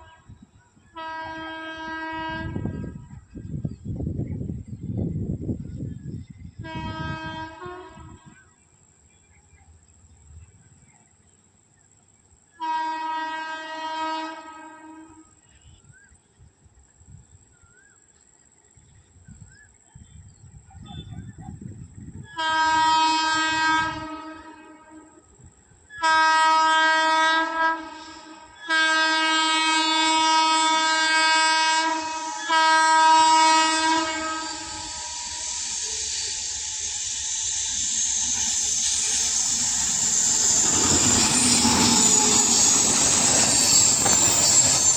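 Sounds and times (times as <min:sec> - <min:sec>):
rushing noise of approaching train: 0:00.0 - 0:44.9
locomotive horn blasts: 0:01.0 - 0:02.9, 0:06.6 - 0:08.4, 0:12.6 - 0:15.3, 0:22.3 - 0:25.2, 0:26.0 - 0:35.8.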